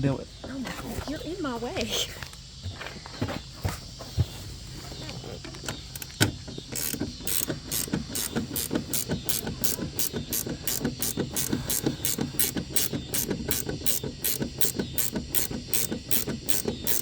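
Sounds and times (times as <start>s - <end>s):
ratchet wrench clicking: 5.8s - 17.0s.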